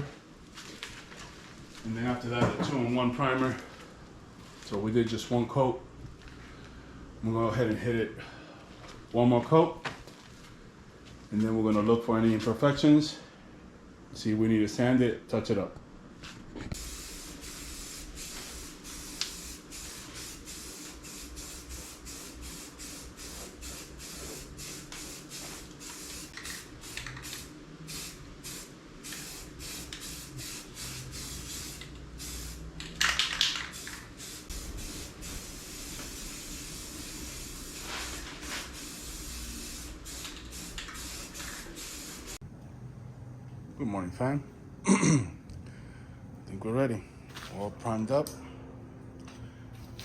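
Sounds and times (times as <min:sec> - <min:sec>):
aerosol spray can hissing: 0:16.8 - 0:32.7, 0:33.3 - 0:42.4.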